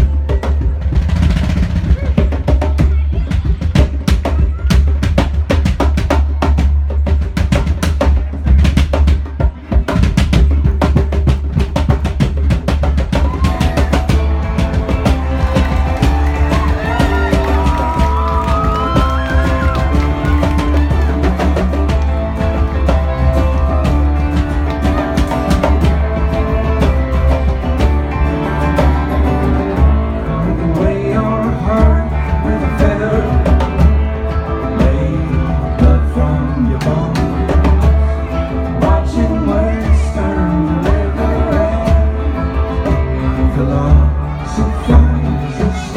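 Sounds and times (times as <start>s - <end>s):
rapid drum hits: 0.0s - 30.1s
heavy steady bass: 0.0s - 45.9s
live band music: 0.0s - 45.9s
strummed guitar: 9.6s - 45.9s
bowed string melody: 13.9s - 40.4s.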